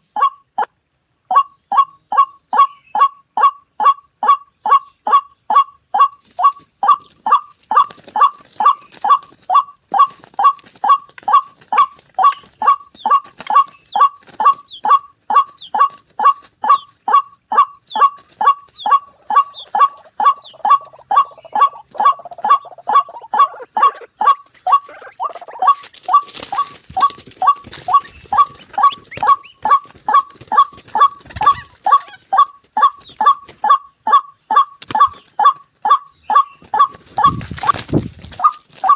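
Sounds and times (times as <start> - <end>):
recorded bird chick calls: 0.0 - 38.9
rustling: 24.5 - 32.0, 36.6 - 38.9.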